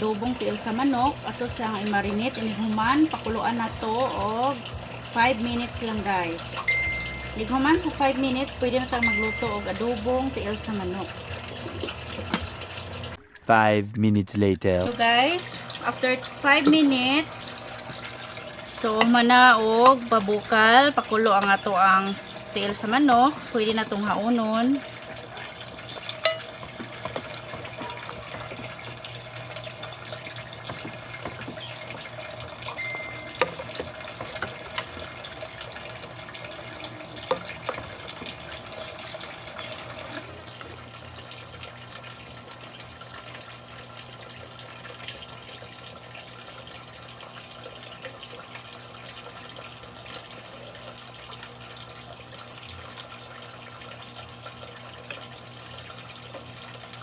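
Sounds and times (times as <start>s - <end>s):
tap water running: 0.0s - 13.4s, 14.6s - 57.0s
pots and utensils clinking: 25.1s - 38.4s.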